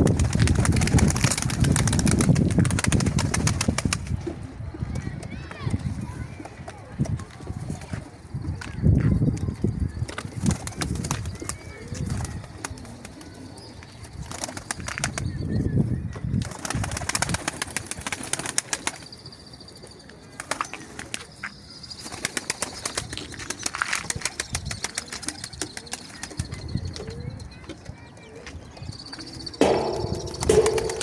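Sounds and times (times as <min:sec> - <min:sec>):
pigeon wings flapping: 0:00.0 - 0:04.1, 0:14.2 - 0:15.3, 0:16.4 - 0:19.1, 0:22.1 - 0:26.5, 0:29.6 - 0:31.0
pigeons cooing: 0:29.2 - 0:31.0.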